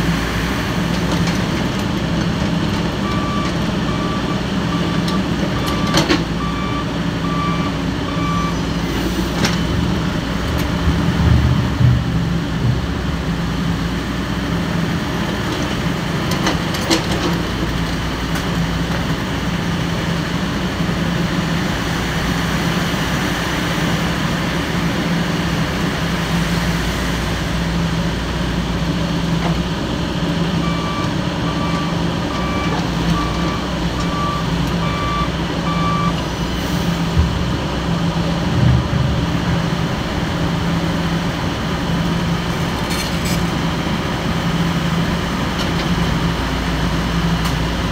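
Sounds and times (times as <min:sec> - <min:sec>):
diesel engine running: 0:00.0 - 0:47.9
reversing alarm beeping: 0:03.0 - 0:08.7, 0:30.6 - 0:36.2.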